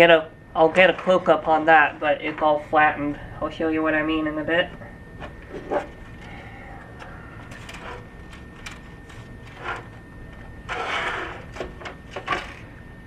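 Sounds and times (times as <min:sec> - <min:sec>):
scraping rustle: 0:07.0 - 0:12.7.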